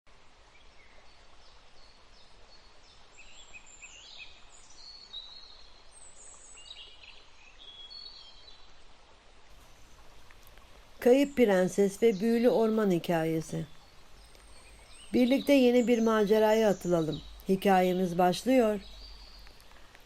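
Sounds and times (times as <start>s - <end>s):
soft steady background hiss: 0.1s - 20.0s.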